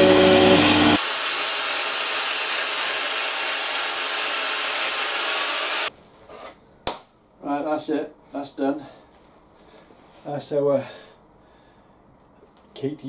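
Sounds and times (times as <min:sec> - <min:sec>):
power tool hiss and whine: 0:00.0 - 0:05.9.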